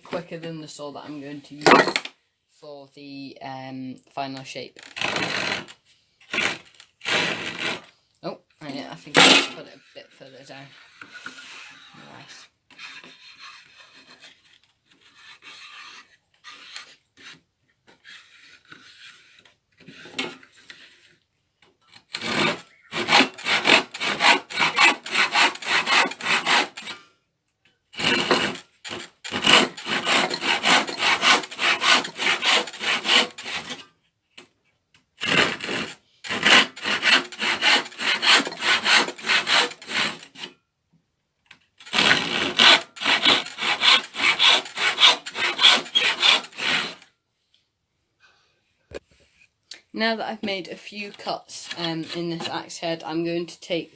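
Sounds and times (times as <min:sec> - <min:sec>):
hand saw cutting wood: 0:01.2 - 0:02.1, 0:04.8 - 0:07.9, 0:08.6 - 0:21.2, 0:22.1 - 0:27.1, 0:27.9 - 0:33.9, 0:35.2 - 0:40.6, 0:41.8 - 0:47.1, 0:50.4 - 0:52.7.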